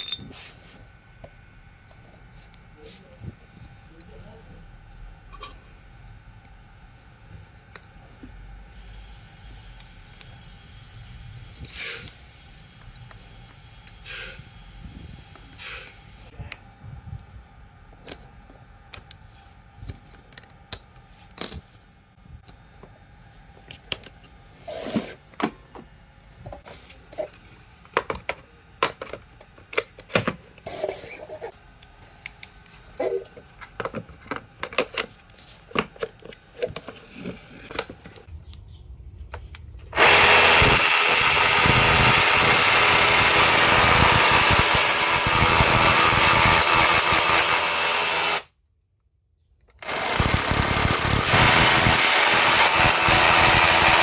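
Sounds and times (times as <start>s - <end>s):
metal parts and tools clinking: 0.0s - 0.4s, 20.0s - 21.8s.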